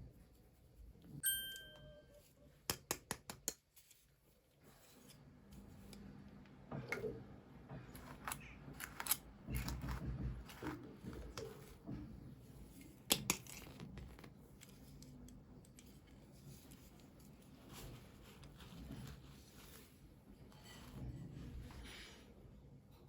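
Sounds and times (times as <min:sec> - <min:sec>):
click with ringing ping: 0:01.2 - 0:02.0.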